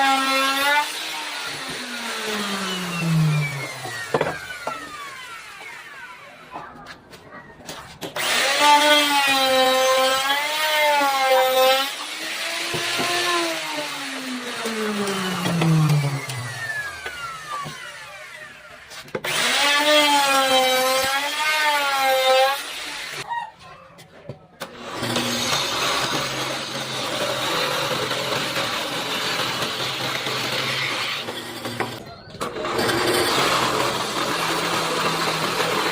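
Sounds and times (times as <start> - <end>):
power tool motor whining: 0.0 - 6.6, 8.2 - 23.3.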